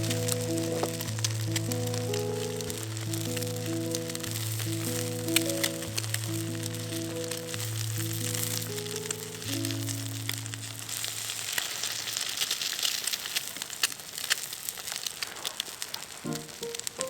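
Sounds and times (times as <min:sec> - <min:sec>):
background music: 0:00.0 - 0:10.8, 0:16.3 - 0:17.0
steak sizzling over fire: 0:00.0 - 0:17.0.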